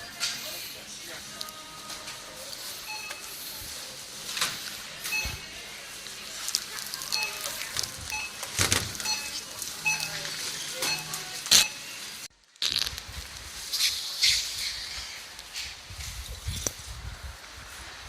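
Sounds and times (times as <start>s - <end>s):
short high electronic beeps: 5.1s - 5.4s, 7.1s - 7.5s, 9.0s - 12.0s.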